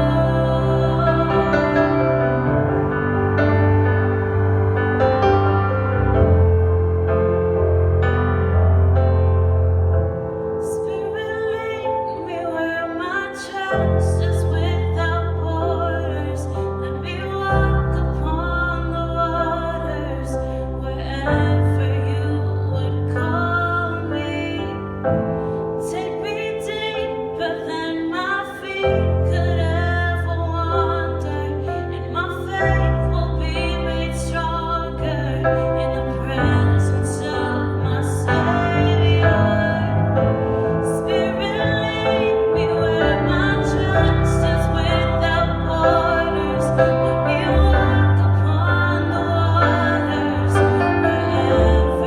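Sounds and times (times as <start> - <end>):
woman singing: 0.0 - 2.5, 10.6 - 25.2, 25.8 - 52.0
piano accompaniment: 0.0 - 52.0.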